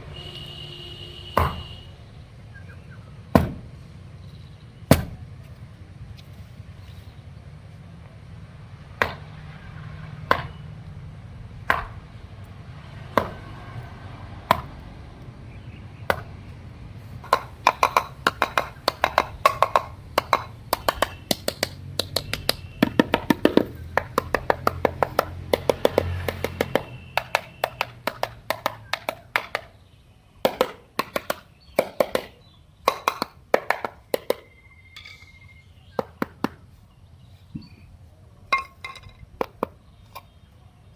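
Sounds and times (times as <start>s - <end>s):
taps and clicks on hard surface: 17.2s - 29.7s, 30.4s - 35.3s, 36.0s - 36.6s, 38.6s - 39.8s.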